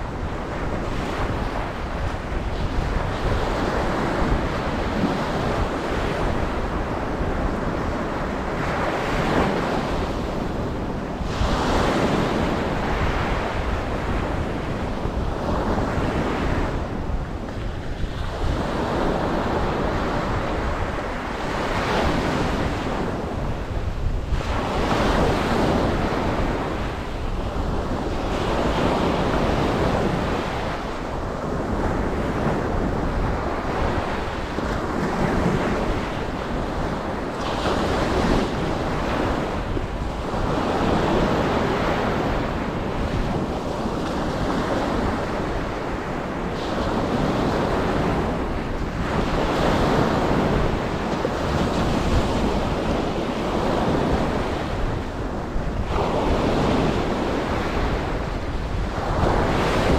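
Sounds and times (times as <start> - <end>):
ocean waves breaking on beach: 0.0 - 59.9
wind rumble on microphone: 0.0 - 59.9.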